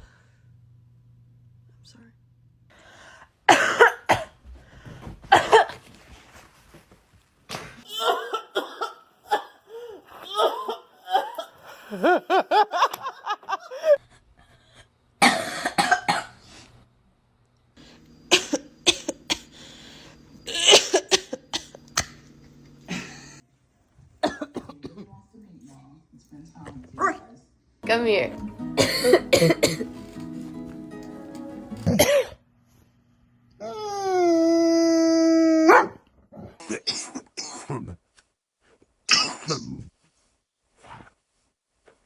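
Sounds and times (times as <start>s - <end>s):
person coughing: 3.5s - 4.4s, 5.2s - 5.8s, 7.8s - 11.5s, 15.2s - 16.3s, 18.3s - 19.5s, 20.5s - 22.2s, 24.2s - 25.1s, 28.8s - 30.0s, 31.8s - 32.4s.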